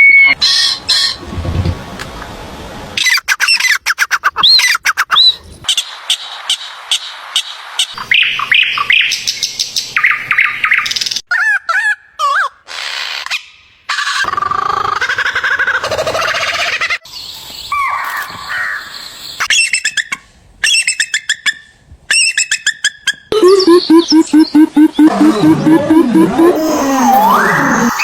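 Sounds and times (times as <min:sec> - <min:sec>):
birds chirping and whistling: 0:03.0 - 0:05.8, 0:06.5 - 0:11.2, 0:15.8 - 0:28.0.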